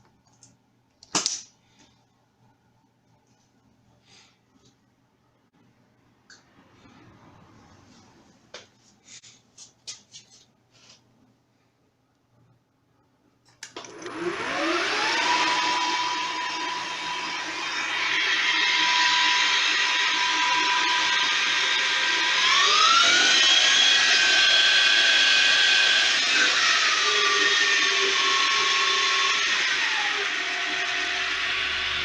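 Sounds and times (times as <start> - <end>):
lathe motor and gears whining: 13.8 - 32.0.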